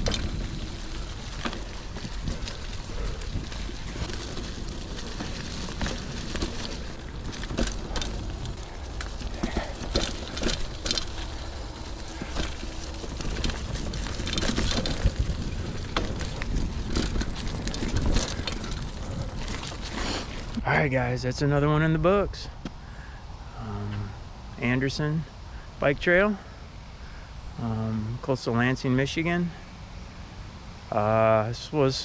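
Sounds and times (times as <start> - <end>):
bike clicks and rattles: 0.0 - 20.6
wind rumble on microphone: 0.0 - 20.7.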